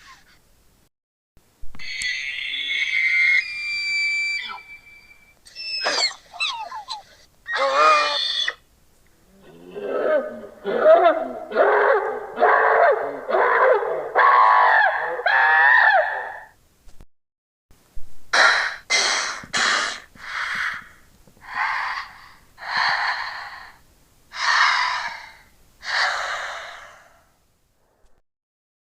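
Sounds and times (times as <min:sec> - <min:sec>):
warbling creature cry: 0:01.8 - 0:08.6, 0:09.4 - 0:16.5
hissing gasp-like creature calls: 0:01.9 - 0:08.6, 0:24.4 - 0:27.3.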